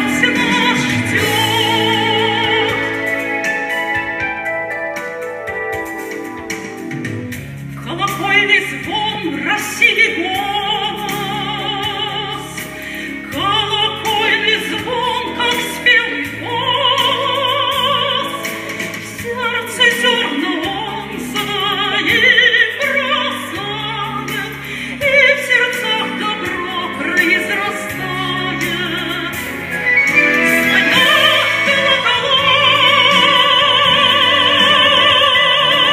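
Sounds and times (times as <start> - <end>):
woman singing operatically: 0.0 - 3.5, 7.8 - 35.9
held bass notes: 26.4 - 35.9.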